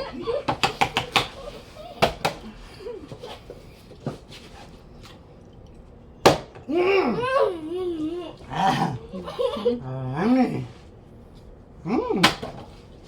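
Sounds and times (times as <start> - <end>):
high wavering voice-like cry: 6.7 - 10.7.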